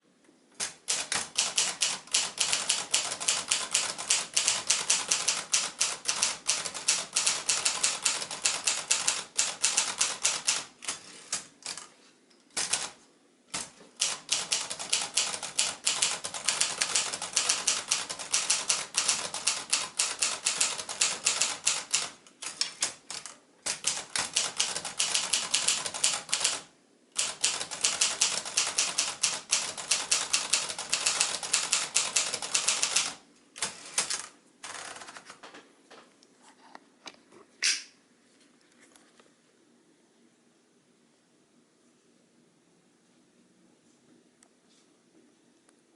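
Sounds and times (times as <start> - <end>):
manual typewriter keys clacking: 0.6 - 11.9, 12.5 - 35.4.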